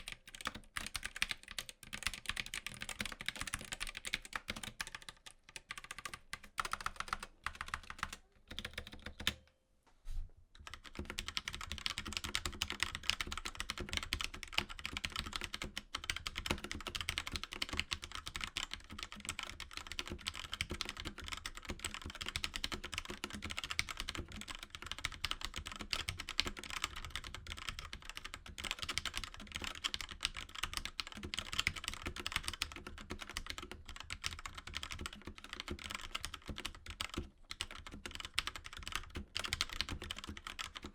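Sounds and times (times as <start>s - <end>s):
typing on mechanical keyboard: 0.0s - 9.4s, 10.6s - 40.9s.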